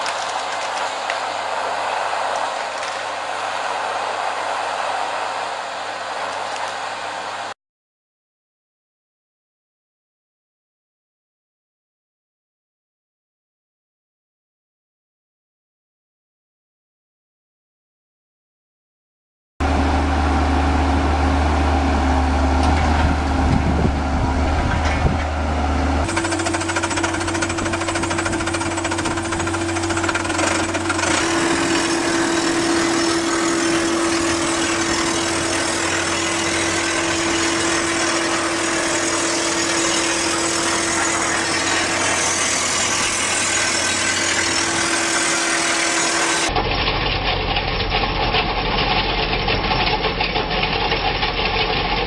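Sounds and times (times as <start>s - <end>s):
constant mechanical whine: 0.0s - 7.6s, 19.6s - 52.0s
heavy machinery running: 19.6s - 52.0s.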